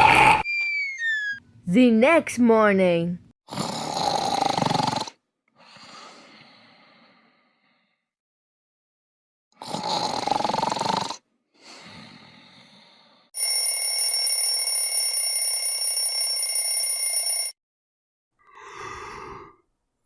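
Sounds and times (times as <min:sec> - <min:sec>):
alarm clock bell ringing: 0:13.4 - 0:17.6.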